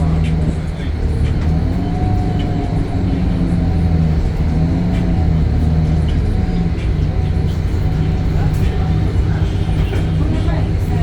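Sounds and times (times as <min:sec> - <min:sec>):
bus diesel engine drone: 0:00.0 - 0:11.0.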